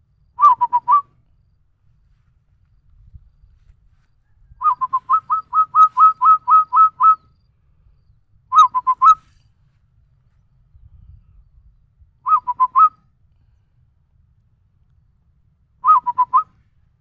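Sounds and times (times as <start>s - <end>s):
person whistling cooing notes: 4.6s - 7.2s, 8.6s - 9.2s, 12.3s - 12.9s.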